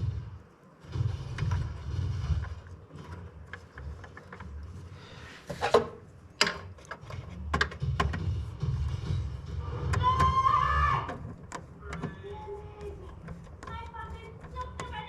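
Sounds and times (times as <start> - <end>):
wires and connectors rattling: 0.0 - 15.0
low hum: 7.0 - 14.9.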